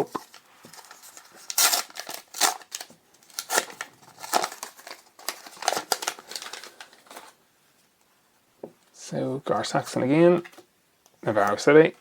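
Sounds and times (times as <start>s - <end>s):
foil wrapper crinkling and tearing: 0.1s - 7.4s.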